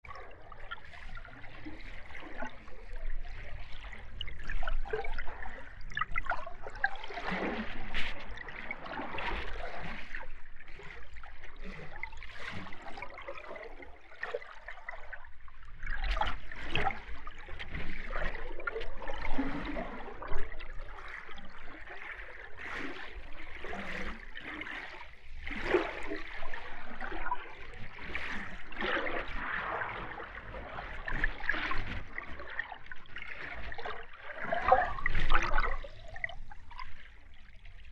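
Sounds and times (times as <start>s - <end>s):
water bubbling underwater: 0.0s - 37.9s.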